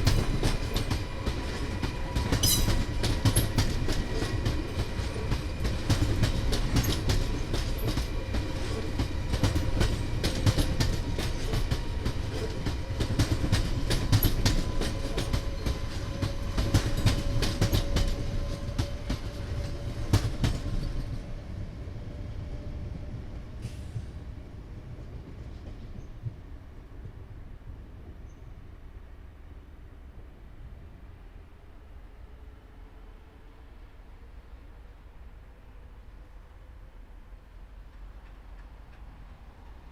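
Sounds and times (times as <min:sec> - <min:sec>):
train wheels clacking over rail joints: 0:00.0 - 0:21.3
train rumble: 0:00.0 - 0:39.9.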